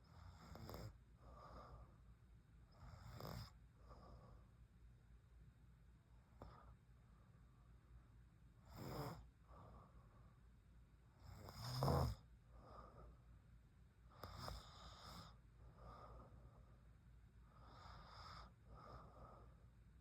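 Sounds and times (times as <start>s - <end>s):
woman snoring: 8.7s - 9.2s, 11.3s - 12.2s.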